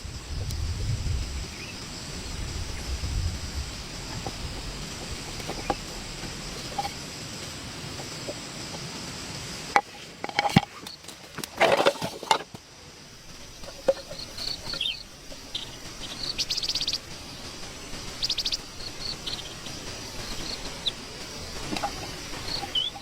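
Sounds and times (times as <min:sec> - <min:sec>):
small animal buzzing trills: 0:13.3 - 0:23.0
small animal chirping: 0:14.2 - 0:17.0, 0:22.4 - 0:23.0.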